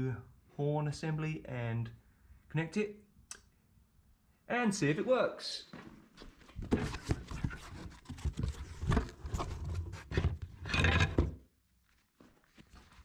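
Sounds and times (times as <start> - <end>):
clicks knocks and scrapes: 6.6 - 11.4.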